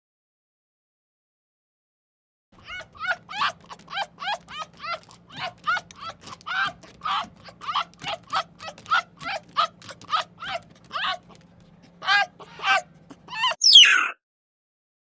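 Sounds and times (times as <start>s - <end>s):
farm animal calling: 2.6s - 14.1s.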